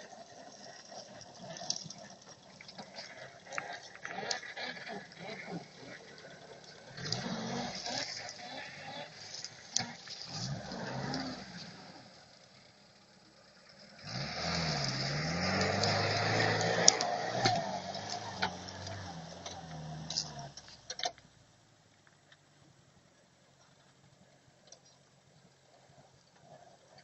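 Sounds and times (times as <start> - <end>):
engine revving: 0.0 - 21.1
clicks: 14.9 - 21.3.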